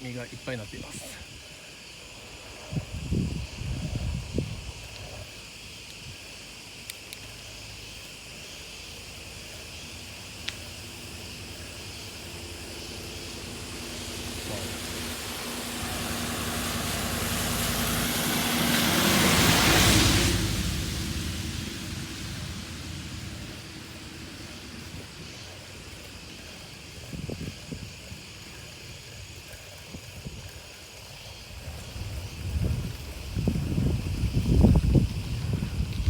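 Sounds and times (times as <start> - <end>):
motor vehicle passing by: 10.8 - 27.1.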